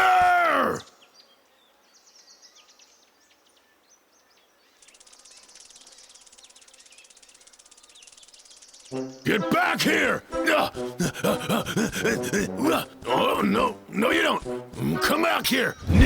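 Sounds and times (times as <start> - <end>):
faint bird chirps: 0.7 - 9.5.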